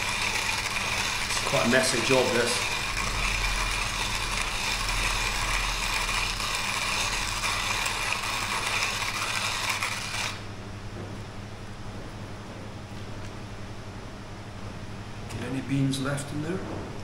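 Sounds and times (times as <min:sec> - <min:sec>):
hand coffee grinder crunching beans: 0:00.0 - 0:10.5.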